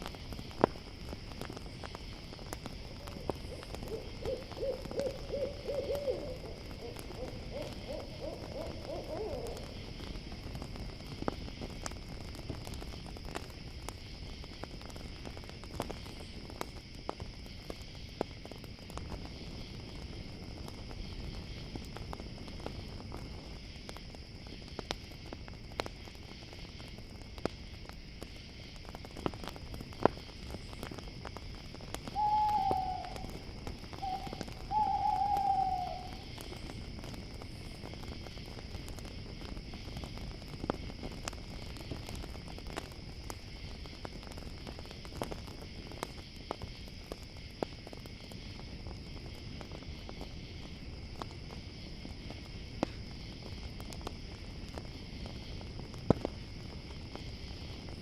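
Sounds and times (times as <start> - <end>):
campfire crackling: 0.0 - 58.0
crickets chirping: 0.0 - 58.0
owl calling: 3.0 - 9.8, 32.1 - 33.3, 34.0 - 36.2.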